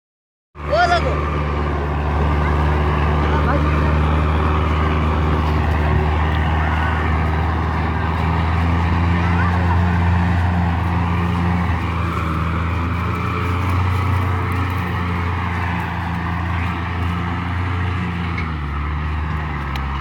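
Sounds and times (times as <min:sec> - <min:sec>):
heavy diesel engine running: 0:00.6 - 0:20.0.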